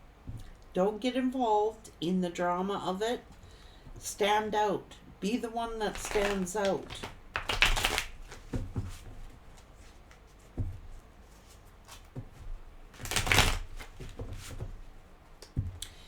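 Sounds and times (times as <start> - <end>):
cards shuffling: 5.6 - 14.9
cards tapping: 5.6 - 16.0.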